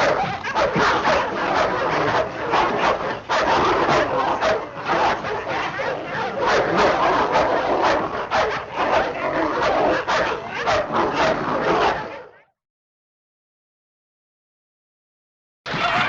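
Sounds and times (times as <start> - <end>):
dog barking: 0.0 - 12.5.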